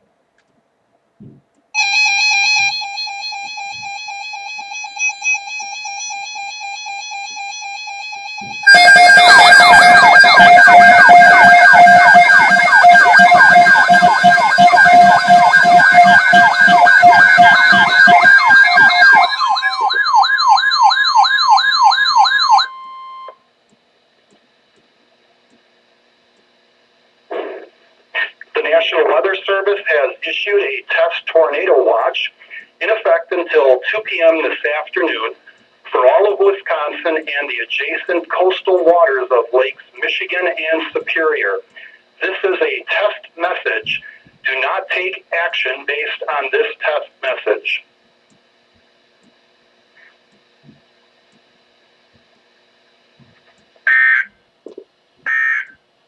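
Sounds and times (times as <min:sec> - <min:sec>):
siren-like wail: 0:01.8 - 0:23.3
pulsing electronic tone: 0:02.5 - 0:23.3.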